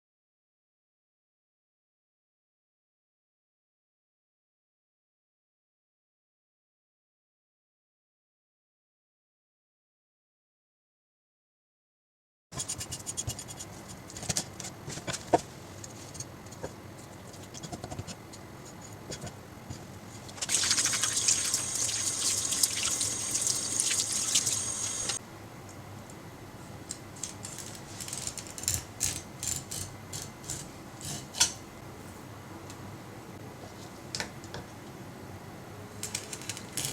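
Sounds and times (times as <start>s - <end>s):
kitchen tap running: 20.5s - 25.2s.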